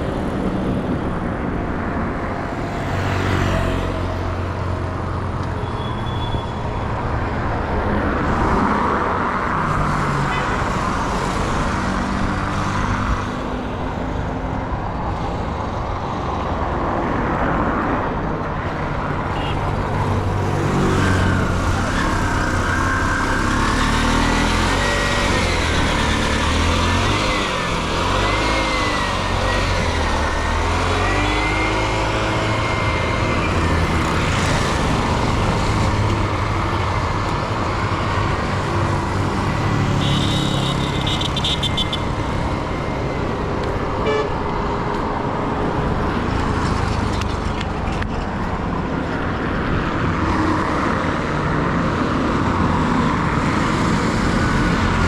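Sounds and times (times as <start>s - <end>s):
vehicle engines running: 18.1s - 55.0s.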